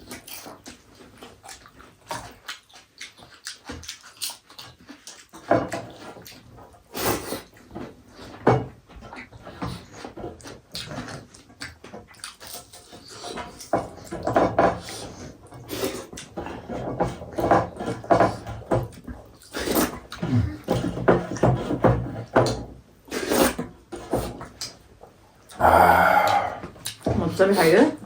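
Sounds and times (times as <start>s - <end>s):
chewing noises: 0.0s - 8.4s, 9.0s - 21.4s, 25.4s - 27.7s
slurping: 25.5s - 27.0s.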